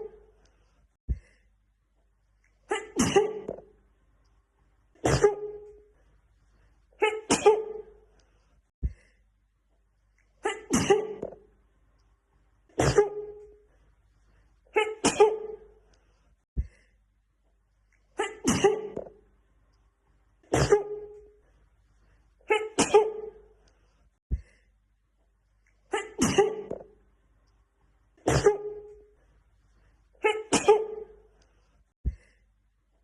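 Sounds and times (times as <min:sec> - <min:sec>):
woman sneezing: 0:02.7 - 0:03.6, 0:05.0 - 0:05.8, 0:07.0 - 0:07.9, 0:10.4 - 0:11.4, 0:12.7 - 0:13.4, 0:14.7 - 0:15.7, 0:18.2 - 0:19.1, 0:20.5 - 0:21.2, 0:22.5 - 0:23.4, 0:25.9 - 0:26.8, 0:28.2 - 0:28.9, 0:30.2 - 0:31.2.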